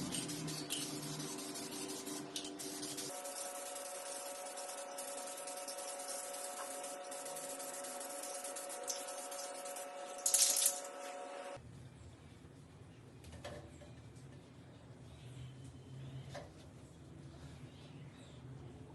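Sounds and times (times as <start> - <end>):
paint spray hissing: 0.0 - 10.8
steady hum: 0.0 - 11.6.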